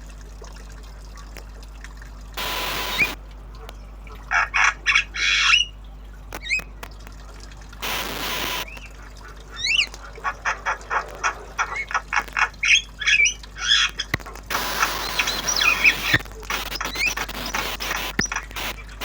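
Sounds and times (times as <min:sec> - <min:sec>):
steady hissing rush: 0:02.4 - 0:03.2, 0:07.8 - 0:08.7, 0:14.5 - 0:19.0
myna bird squawking and chattering: 0:04.3 - 0:05.8, 0:08.2 - 0:19.0.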